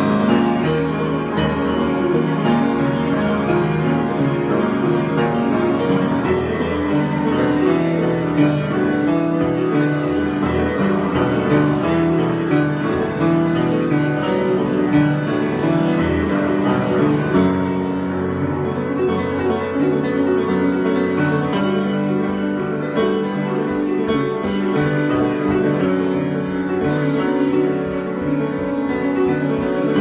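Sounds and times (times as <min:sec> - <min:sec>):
solo piano improvisation: 0:00.0 - 0:30.0.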